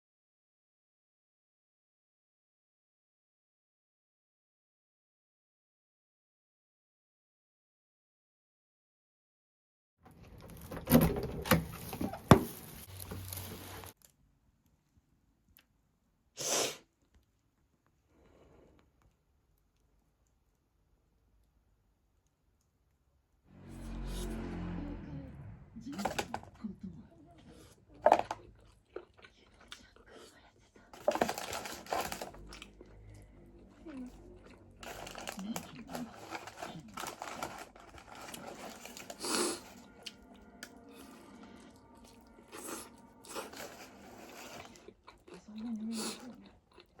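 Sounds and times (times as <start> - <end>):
rustling: 10.2 - 14.0.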